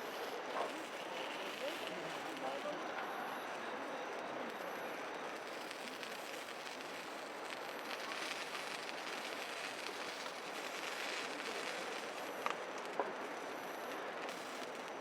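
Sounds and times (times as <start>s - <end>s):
fire crackling: 0.0s - 15.0s
meat sizzling on a griddle: 3.4s - 15.0s.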